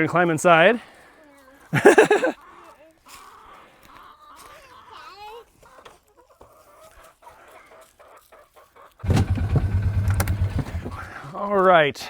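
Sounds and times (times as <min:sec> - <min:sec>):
chickens clucking: 0:01.4 - 0:11.3
wavering chicken calls: 0:01.8 - 0:09.3.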